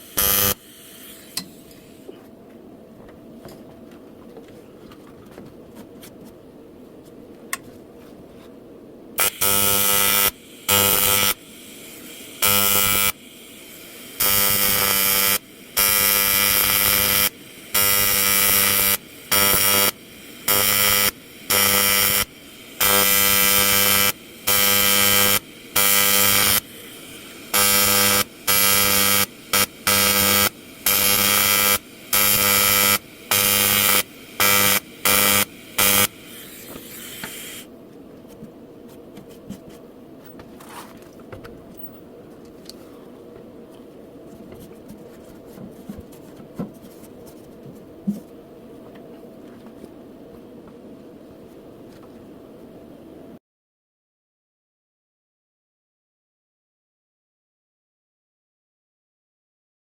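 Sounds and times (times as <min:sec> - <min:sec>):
welding arc buzzing: 0:00.0 - 0:02.1, 0:09.2 - 0:37.7.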